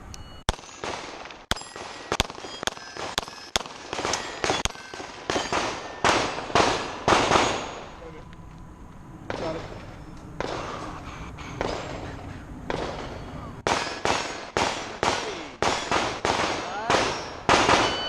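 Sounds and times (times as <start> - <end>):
pistol shots: 0.5 - 8.0, 10.4 - 10.8, 12.7 - 18.0
steel target clanging: 1.5 - 6.5, 7.2 - 8.1, 11.6 - 16.1, 16.7 - 18.0.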